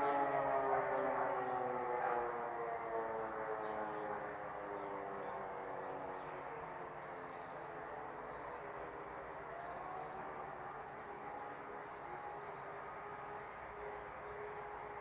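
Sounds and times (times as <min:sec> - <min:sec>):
electric sirens winding down: 0:00.0 - 0:06.1
faint distant siren rising: 0:00.0 - 0:15.0.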